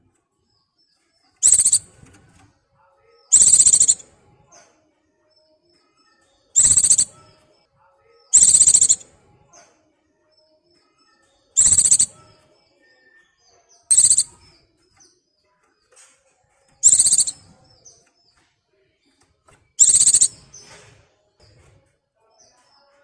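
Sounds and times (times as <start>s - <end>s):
faint high chirps: 1.2s - 2.5s, 3.3s - 4.2s, 6.1s - 7.6s, 8.3s - 9.2s, 10.4s - 15.2s, 16.8s - 18.1s, 19.8s - 20.8s
bird harsh calls: 1.4s - 1.9s, 3.3s - 4.0s, 6.6s - 7.2s, 8.4s - 9.0s, 11.6s - 12.2s, 13.9s - 14.4s, 16.8s - 17.4s, 19.8s - 20.4s.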